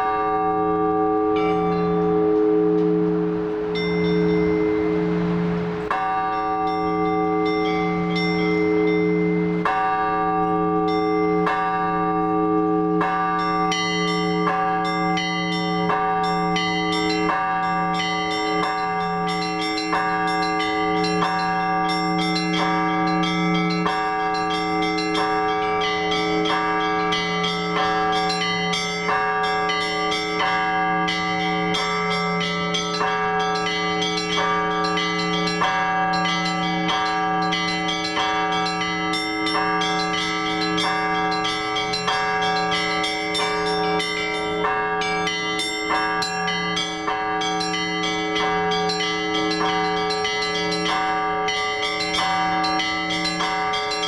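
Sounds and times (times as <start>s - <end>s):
large church bell: 0.0s - 54.0s
small bells ringing rapidly: 13.0s - 54.0s.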